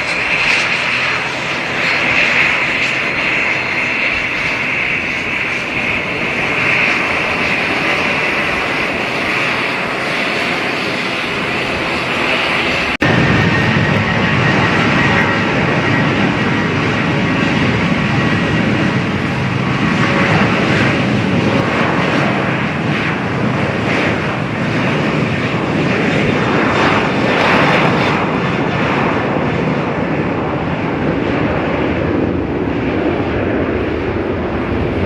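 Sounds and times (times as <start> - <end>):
airliner engines roaring: 0.0 - 35.0.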